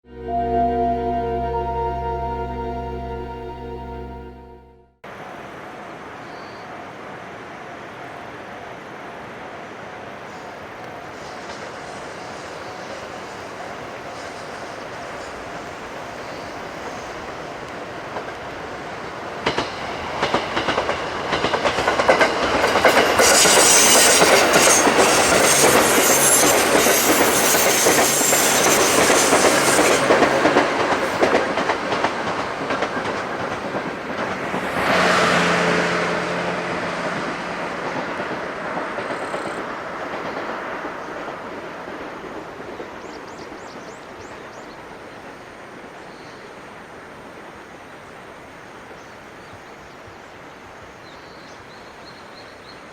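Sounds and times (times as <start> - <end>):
electric train passing: 0.0 - 45.9
wheels clacking over rail joints: 18.1 - 43.8.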